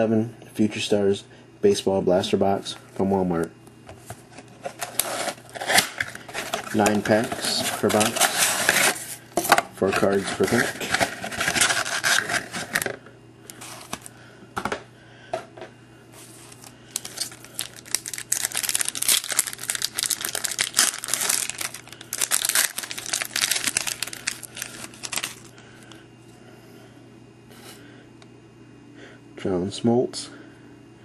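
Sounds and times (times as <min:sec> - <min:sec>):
wrapper tearing and crinkling: 0:04.6 - 0:09.2, 0:09.9 - 0:12.9, 0:16.4 - 0:25.6.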